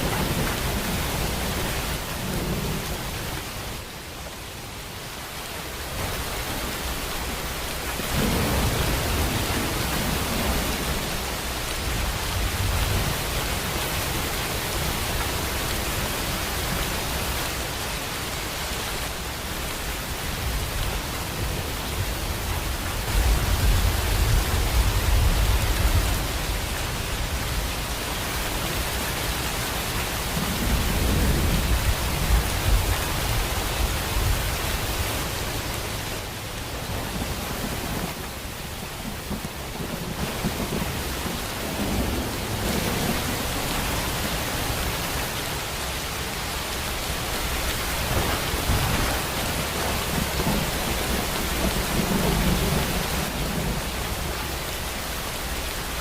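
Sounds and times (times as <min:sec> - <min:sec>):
heavy rain: 0:00.0 - 0:56.0
low rolling thunder: 0:08.0 - 0:14.2, 0:30.2 - 0:35.1, 0:36.8 - 0:45.0, 0:47.3 - 0:55.5.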